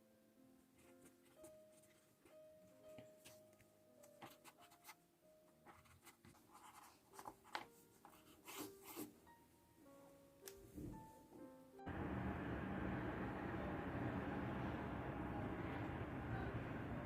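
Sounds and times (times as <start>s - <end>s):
soft background music: 0.0s - 17.0s.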